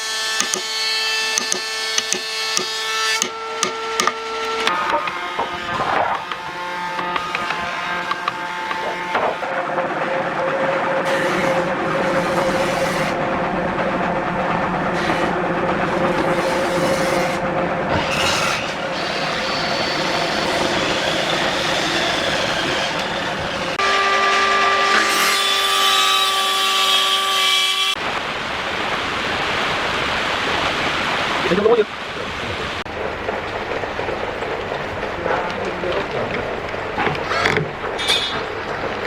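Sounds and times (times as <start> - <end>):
woodworking machine humming: 0.0 - 28.0.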